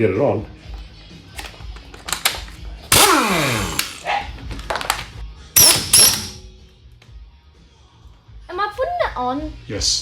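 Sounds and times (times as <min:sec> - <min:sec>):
cordless wheel gun whirring: 0:02.9 - 0:04.0
metallic clicks and clinks: 0:05.6 - 0:06.4.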